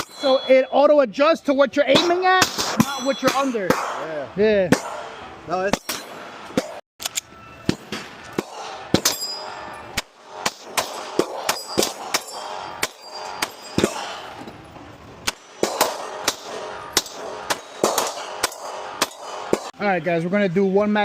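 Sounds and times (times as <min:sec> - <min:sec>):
gunshots: 0:01.9 - 0:06.8, 0:07.6 - 0:14.3, 0:15.2 - 0:19.8.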